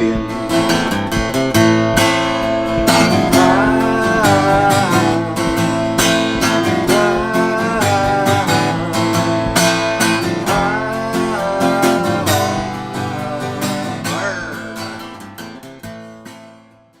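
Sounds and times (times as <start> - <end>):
strummed acoustic guitar: 0.0 - 17.0.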